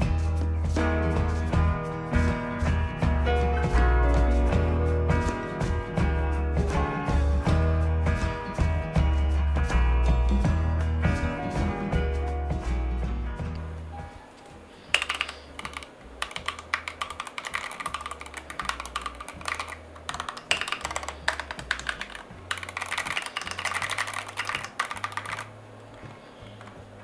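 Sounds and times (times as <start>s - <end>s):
soft background music: 0.0s - 27.0s
fast typing on keyboard: 14.9s - 25.5s.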